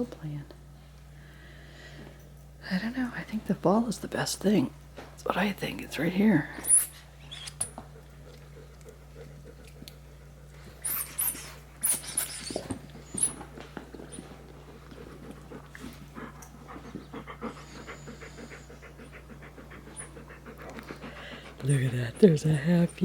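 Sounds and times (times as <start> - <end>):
small dog panting: 13.9 - 22.9.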